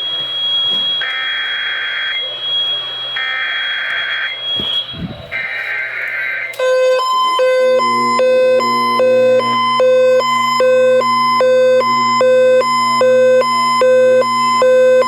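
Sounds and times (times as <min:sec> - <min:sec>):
steady high whistle: 0:06.3 - 0:15.0
buzzy two-pitch alert tone: 0:06.6 - 0:15.0.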